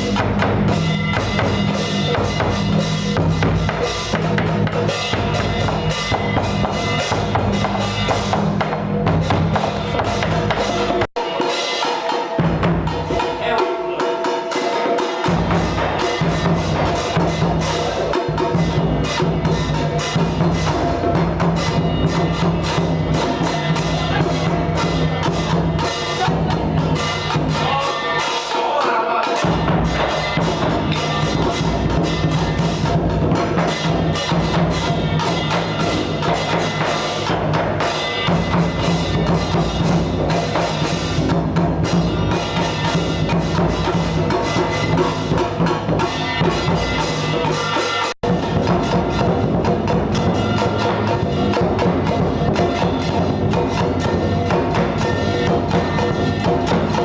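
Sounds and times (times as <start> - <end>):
drums beating: 0.0 - 57.0.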